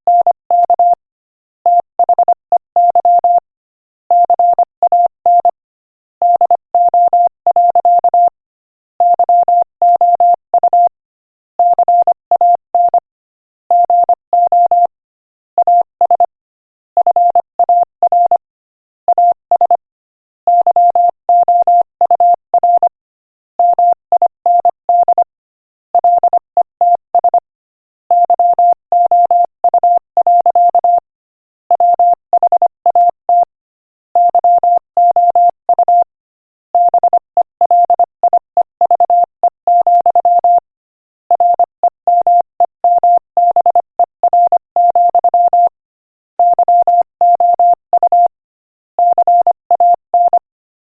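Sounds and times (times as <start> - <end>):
morse code beeps: 0.1 - 1.0, 1.7 - 3.4, 4.1 - 5.6, 6.2 - 8.4, 9.0 - 10.9, 11.6 - 13.1, 13.7 - 14.9, 15.6 - 16.4, 19.1 - 19.8, 20.5 - 23.0, 23.6 - 25.3, 26.0 - 27.5, 28.1 - 31.0, 31.7 - 33.6, 34.2 - 36.1, 36.8 - 40.7, 41.3 - 45.8, 46.4 - 48.4, 49.0 - 50.5.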